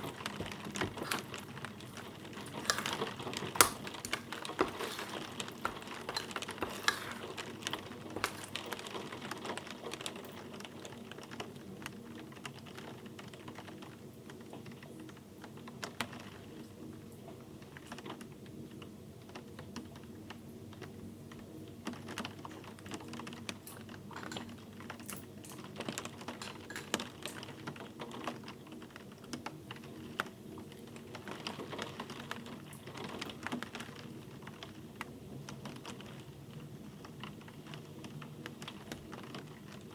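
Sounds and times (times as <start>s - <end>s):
light clicking and tapping: 0.0s - 7.4s.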